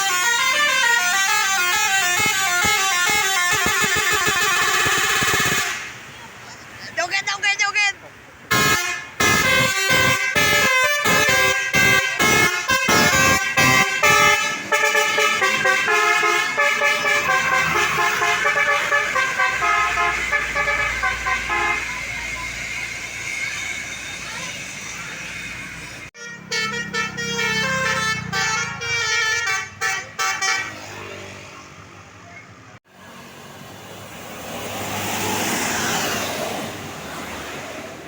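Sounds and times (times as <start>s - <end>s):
bus multi-tone horn melody: 0.0s - 6.1s, 8.5s - 22.4s, 26.1s - 31.2s.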